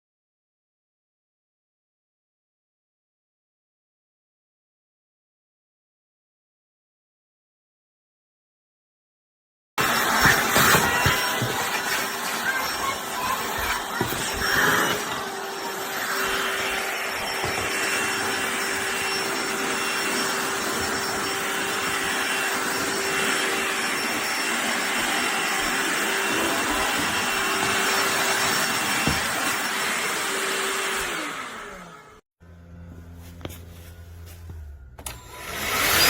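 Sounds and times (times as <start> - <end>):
vacuum motor winding down: 9.8 - 33.0, 34.0 - 36.0
handheld vacuum running: 9.8 - 36.0.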